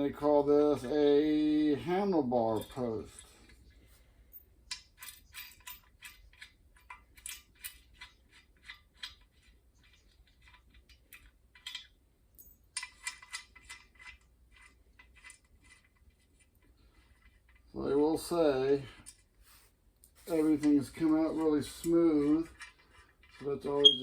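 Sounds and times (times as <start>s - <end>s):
metallic screw clicks: 4.6s - 12.0s.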